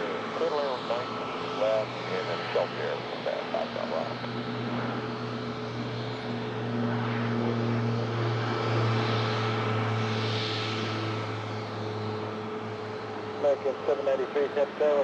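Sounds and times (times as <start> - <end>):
airplane engine drone: 0.0 - 15.0.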